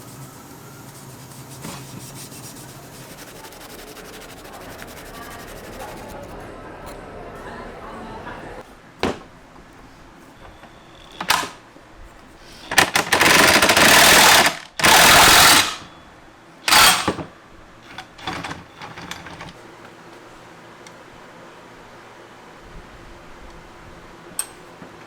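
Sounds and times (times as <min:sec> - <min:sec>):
pneumatic air tool bursts: 0:11.2 - 0:11.6, 0:12.6 - 0:15.9, 0:16.7 - 0:17.2.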